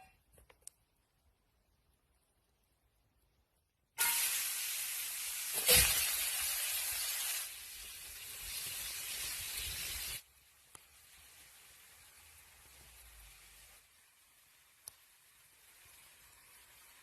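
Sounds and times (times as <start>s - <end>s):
food sizzling: 4.0s - 17.0s.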